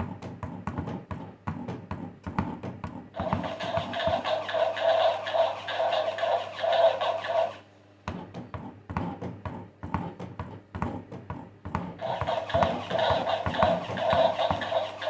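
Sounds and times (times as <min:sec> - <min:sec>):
low hum with mid-pitched tones: 0:00.0 - 0:15.0.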